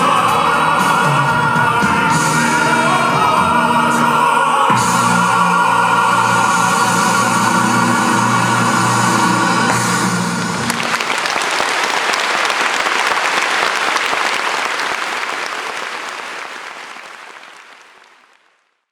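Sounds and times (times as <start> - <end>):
voices singing held chord: 0.0 - 10.6
audience applause: 9.4 - 18.8.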